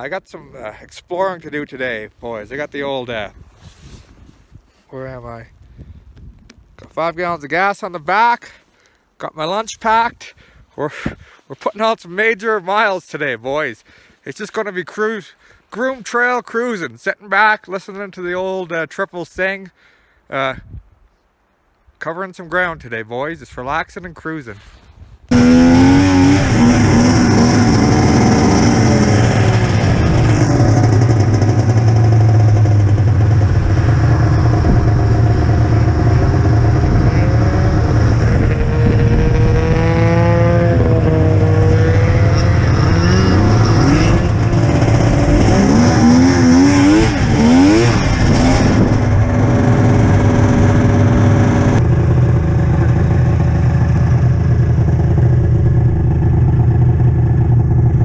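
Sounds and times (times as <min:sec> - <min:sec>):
snowmobile engine revving: 0:25.3 - 0:58.0.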